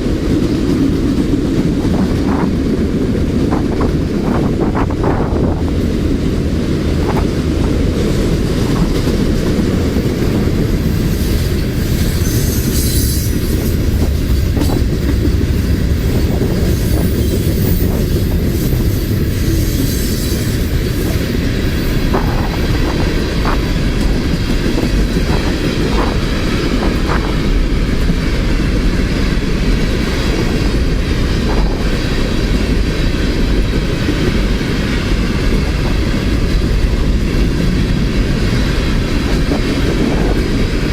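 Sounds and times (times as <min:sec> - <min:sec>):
steel wheels rumbling on rail: 0:00.0 - 0:40.9
clacks over rail joints: 0:00.2 - 0:10.9, 0:12.8 - 0:18.4, 0:20.6 - 0:40.9
wheel squeals: 0:11.0 - 0:13.9.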